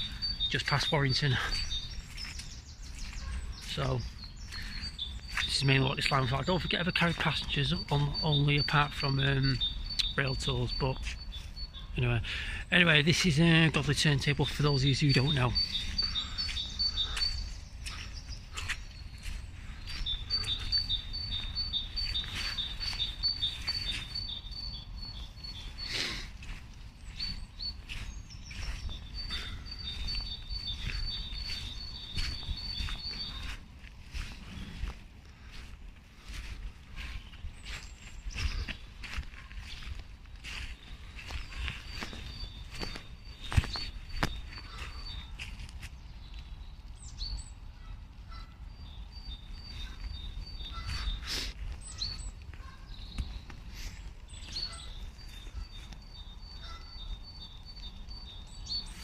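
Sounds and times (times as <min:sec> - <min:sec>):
songbird singing high notes: 0:00.0 - 0:19.2, 0:19.8 - 0:33.6
wind rumble on microphone: 0:26.4 - 0:59.0.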